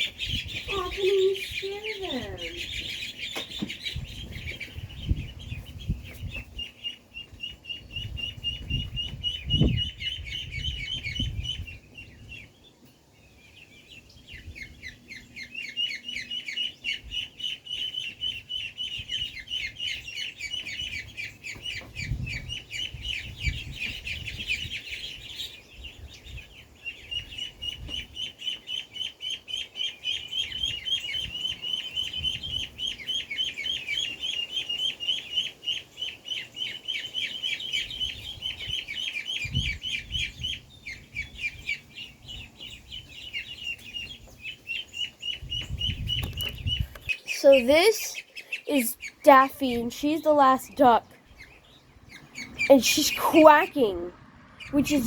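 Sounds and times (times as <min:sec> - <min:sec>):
ducklings peeping: 0:00.0 - 0:55.0.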